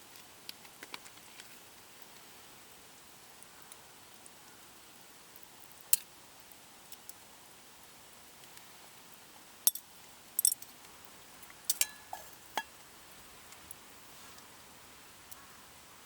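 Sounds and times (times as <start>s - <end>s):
cookware clinking: 11.7s - 12.7s.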